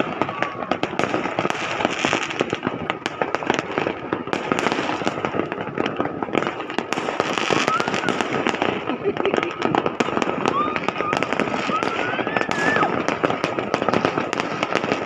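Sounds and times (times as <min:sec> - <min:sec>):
fireworks cracking and popping: 0:00.0 - 0:15.0
faint firework whistle: 0:07.3 - 0:08.6, 0:10.2 - 0:14.9.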